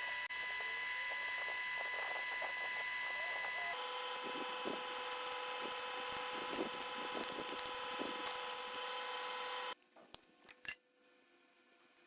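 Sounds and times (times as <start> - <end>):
machine tool motor whine: 0.0 - 9.8
metal cutting scraping: 1.0 - 9.8.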